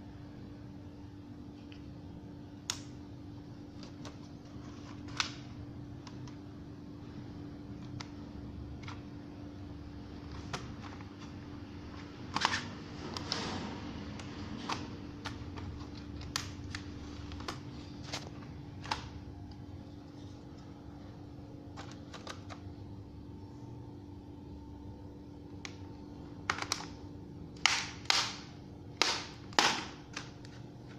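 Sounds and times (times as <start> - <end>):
low steady hum: 0.0 - 30.9
plastic parts clicking: 26.4 - 27.0.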